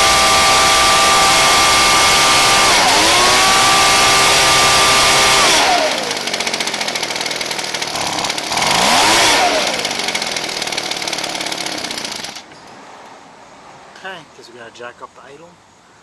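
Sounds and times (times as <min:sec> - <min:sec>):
backpack blower engine idling: 0:00.0 - 0:12.5.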